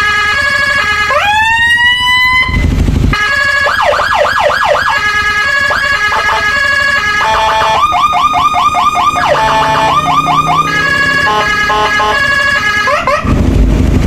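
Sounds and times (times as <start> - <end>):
electronic siren: 0.0 - 13.4.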